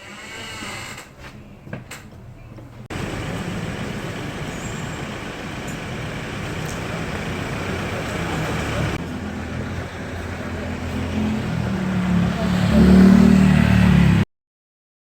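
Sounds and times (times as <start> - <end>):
car engine running: 2.9 - 12.7.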